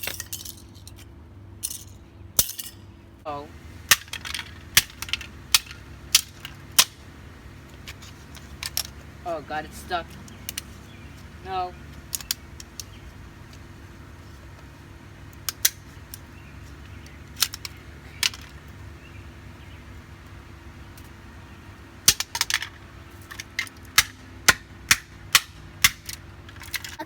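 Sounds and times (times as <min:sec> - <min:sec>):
low background hum: 0:00.0 - 0:27.0
plastic remote controls breaking: 0:03.9 - 0:09.2.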